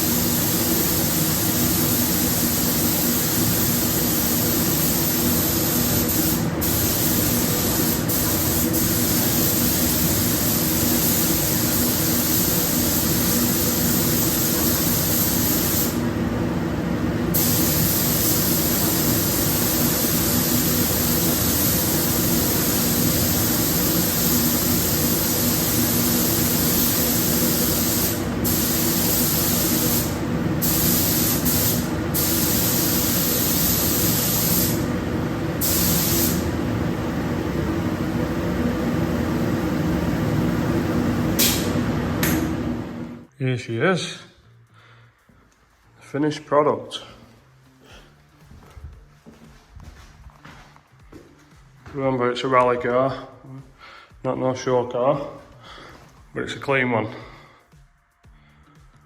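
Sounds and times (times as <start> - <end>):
spray gun air hissing: 0.0 - 16.2, 17.2 - 36.8, 41.2 - 43.2
steady low hum: 0.0 - 43.3.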